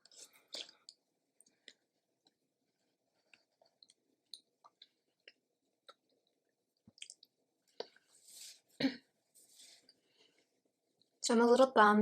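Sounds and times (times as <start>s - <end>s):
wet chewing clicks: 6.9s - 8.0s.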